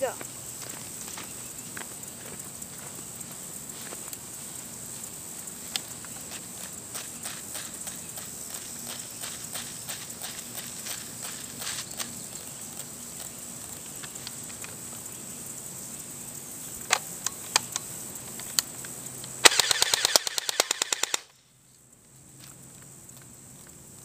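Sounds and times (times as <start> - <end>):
airsoft gun firing: 19.4 - 21.3.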